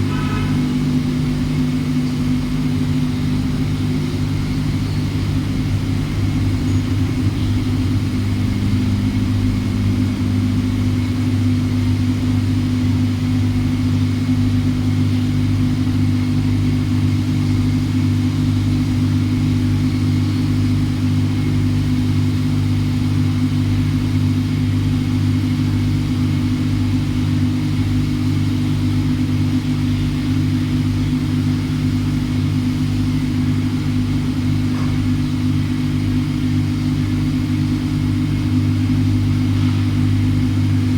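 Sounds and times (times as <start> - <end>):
faint high whine: 0.0 - 13.6
machine low mechanical hum: 0.0 - 40.9.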